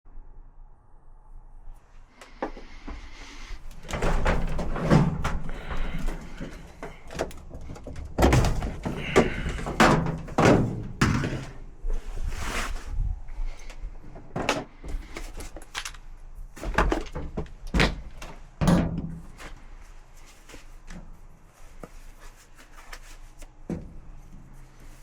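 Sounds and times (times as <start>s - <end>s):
hard objects clunking and scraping: 2.2s - 16.0s, 16.6s - 19.7s.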